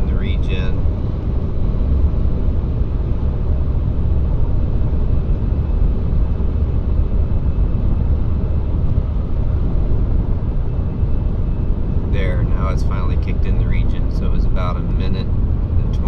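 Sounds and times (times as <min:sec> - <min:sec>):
diesel engine running: 0:00.0 - 0:16.0
road noise: 0:00.0 - 0:16.0.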